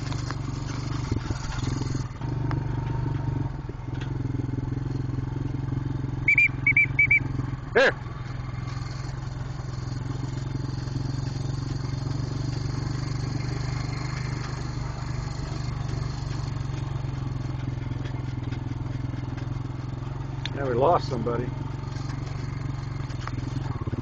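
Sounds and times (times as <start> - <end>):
atv engine running: 0.0 - 24.0
rolling ground noise: 0.0 - 24.0.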